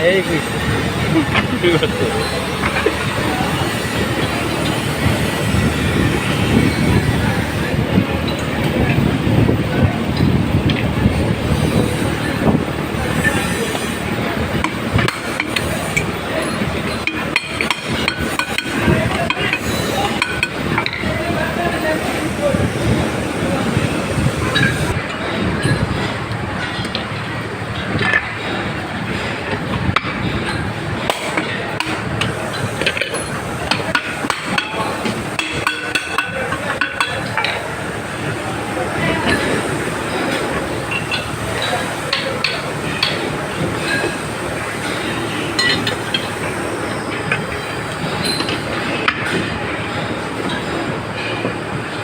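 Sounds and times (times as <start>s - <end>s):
hand tools knocking and clicking: 14.6s - 16.1s, 16.9s - 21.1s, 30.0s - 37.6s.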